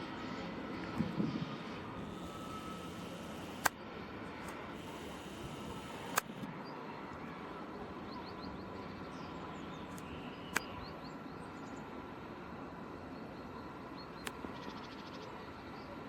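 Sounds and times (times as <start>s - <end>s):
outdoor background noise: 0.0s - 16.0s
sharp clicks: 2.0s - 3.8s, 4.4s - 6.5s, 14.2s - 14.6s.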